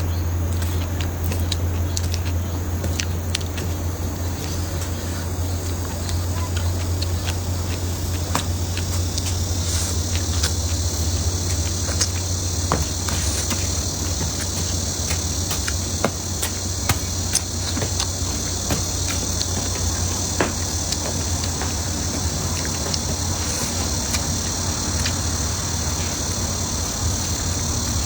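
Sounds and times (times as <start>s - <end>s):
insect chirring: 0.0s - 28.0s
chewing and utensil clicks: 0.6s - 12.4s.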